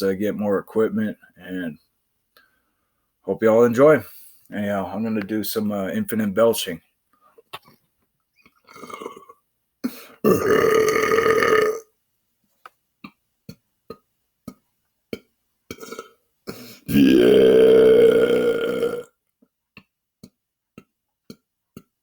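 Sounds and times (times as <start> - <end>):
man belching: 8.7 - 9.3, 10.2 - 11.9, 15.7 - 16.1, 16.9 - 19.1.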